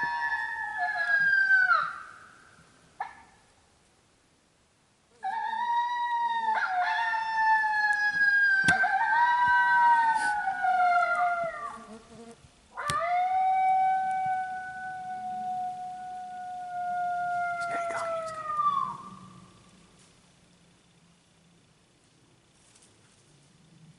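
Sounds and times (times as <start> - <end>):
coyote howling: 0.0 - 2.4, 5.2 - 11.9, 12.7 - 19.6.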